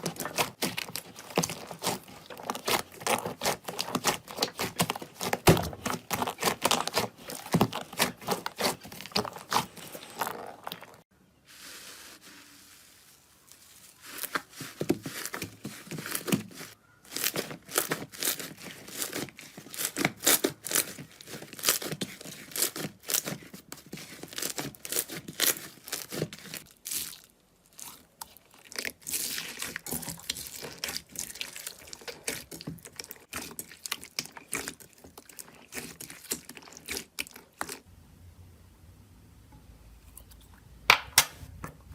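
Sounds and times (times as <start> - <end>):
slime crackling and popping: 0.0 - 11.0.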